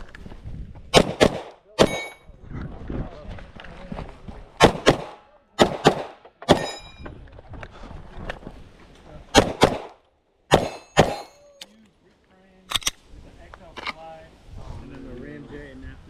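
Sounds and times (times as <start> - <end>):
airsoft gun shots: 1.0 - 2.1, 4.6 - 6.8, 9.4 - 11.4
short metallic ring: 1.8 - 2.3, 6.6 - 7.0, 10.6 - 11.6.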